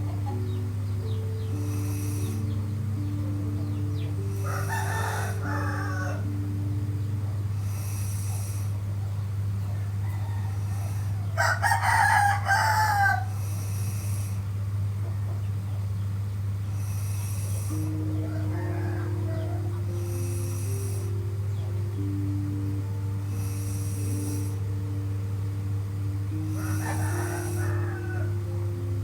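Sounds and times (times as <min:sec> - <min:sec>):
steady low hum: 0:00.0 - 0:29.0
rooster crowing: 0:04.2 - 0:06.6, 0:09.6 - 0:14.4, 0:16.8 - 0:21.1, 0:26.3 - 0:28.7.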